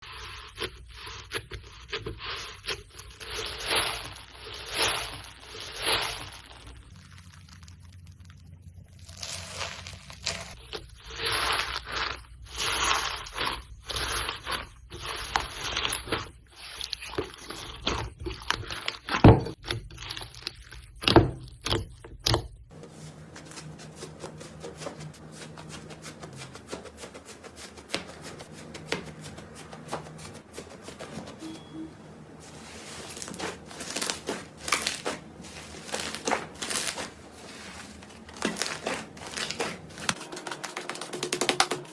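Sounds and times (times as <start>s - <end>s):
slime squelching: 0.0s - 41.8s
slime crackling and popping: 2.7s - 10.6s.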